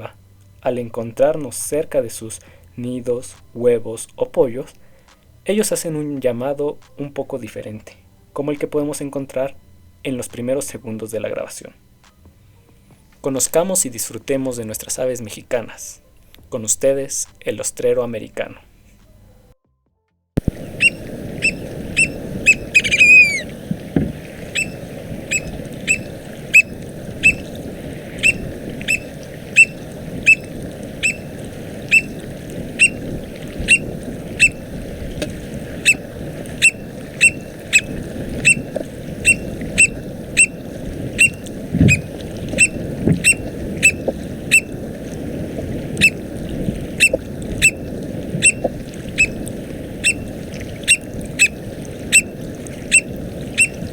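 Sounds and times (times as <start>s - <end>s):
downward-slurred bird call: 20.4s - 34.7s, 35.7s - 44.8s, 47.0s - 49.4s, 50.8s - 52.3s, 52.9s - 53.9s
steady low rush: 20.4s - 53.9s
oystercatcher sharp calls: 20.5s - 34.7s, 35.6s - 44.8s, 45.9s - 46.3s, 46.9s - 53.9s.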